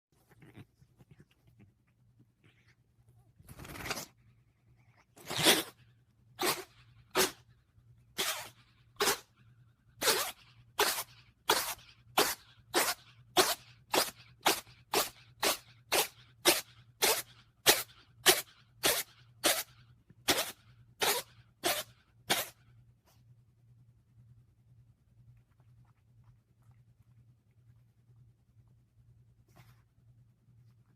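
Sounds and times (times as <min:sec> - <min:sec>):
faint steady hum: 0:00.1 - 0:30.9
cat sneezing: 0:05.1 - 0:05.8, 0:06.4 - 0:07.5, 0:08.2 - 0:09.3, 0:10.0 - 0:19.7, 0:20.3 - 0:22.6.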